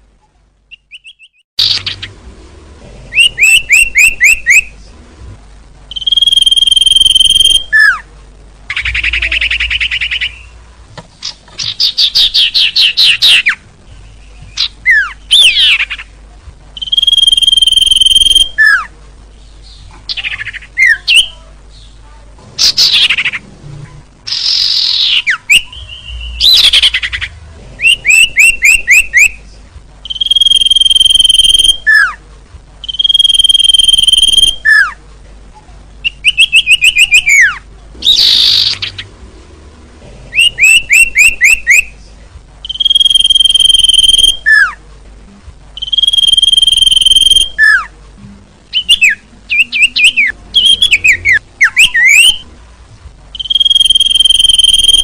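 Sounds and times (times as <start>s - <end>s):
bird whistled call: 3.1s - 4.7s, 5.9s - 8.0s, 16.8s - 18.8s, 27.8s - 29.4s, 30.1s - 32.1s, 32.8s - 34.9s, 40.4s - 41.9s, 42.6s - 44.7s, 45.8s - 47.8s, 48.7s - 52.4s, 53.4s - 55.0s.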